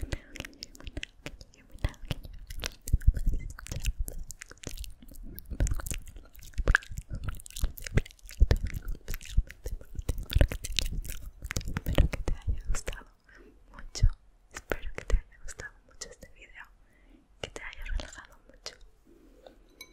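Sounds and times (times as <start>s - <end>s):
mouth clicks and smacks: 0.0s - 13.2s, 13.8s - 16.6s, 17.4s - 18.9s.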